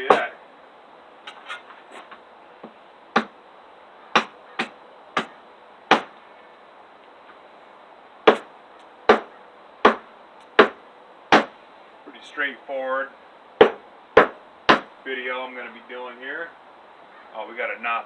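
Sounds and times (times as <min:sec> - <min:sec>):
hammer striking hatchet into wood: 0:00.1 - 0:00.3, 0:03.2 - 0:03.4, 0:04.2 - 0:05.3, 0:05.9 - 0:06.1, 0:08.3 - 0:08.5, 0:09.1 - 0:11.5, 0:13.6 - 0:14.9.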